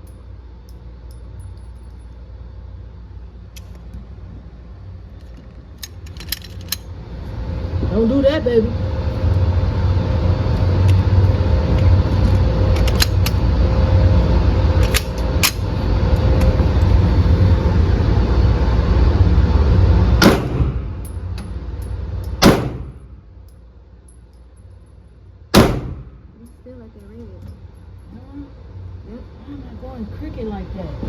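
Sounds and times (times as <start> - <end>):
low rumble: 0.0 - 31.0
pistol shots: 20.2 - 20.9, 22.4 - 23.0, 25.5 - 26.2.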